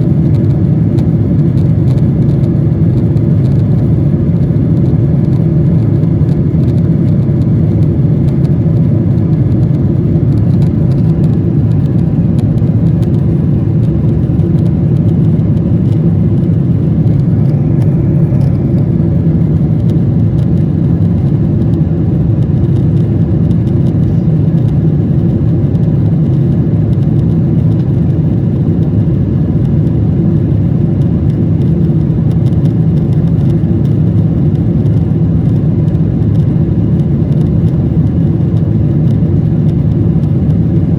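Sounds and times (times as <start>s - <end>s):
aircraft engine drone: 0.0s - 40.9s
rushing air: 6.7s - 29.0s.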